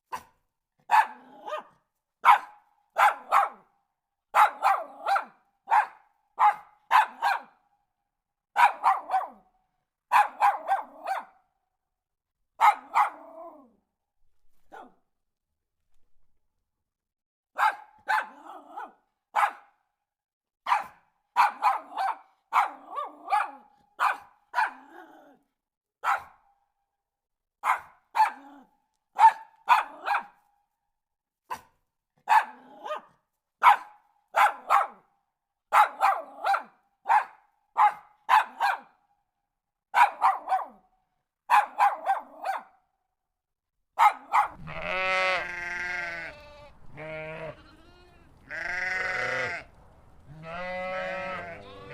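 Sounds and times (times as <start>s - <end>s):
dog barking: 0.0s - 7.8s, 8.5s - 11.6s, 12.6s - 13.8s, 14.6s - 15.1s, 17.5s - 19.9s, 20.6s - 25.4s, 26.0s - 26.6s, 27.6s - 30.5s, 31.4s - 39.2s, 39.9s - 43.0s, 44.0s - 47.9s, 50.4s - 51.9s
long wavering bleat: 44.6s - 49.7s, 50.3s - 51.9s.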